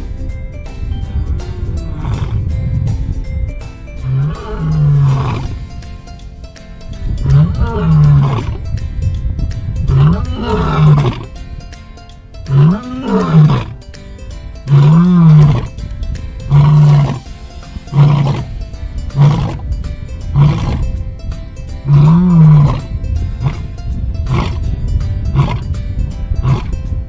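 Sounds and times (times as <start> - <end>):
big cat roaring: 4.1 - 5.6, 7.2 - 8.6, 9.9 - 11.3, 12.5 - 13.8, 14.7 - 15.7, 16.5 - 17.2, 17.9 - 18.5, 19.2 - 19.6, 20.3 - 20.8, 21.9 - 22.8, 25.3 - 25.6.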